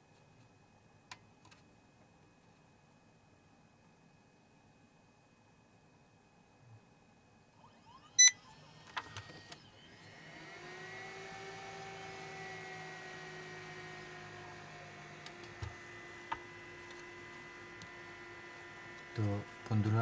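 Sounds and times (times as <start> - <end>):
motor whine: 7.6 - 20.0
short electronic beep: 8.2 - 8.4.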